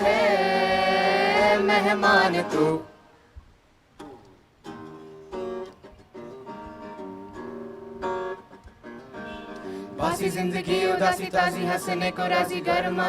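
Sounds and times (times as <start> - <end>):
guitar picked notes and chords: 4.0 - 13.0.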